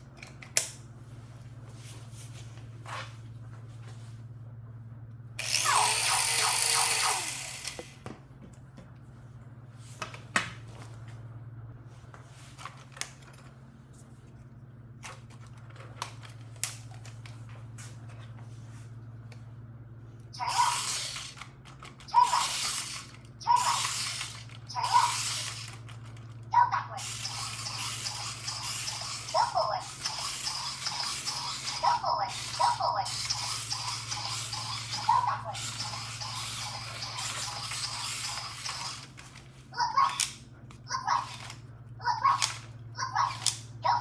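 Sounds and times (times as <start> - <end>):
steady low hum: 0.0 - 44.0
small gear motors whirring: 5.4 - 8.0, 20.4 - 44.0.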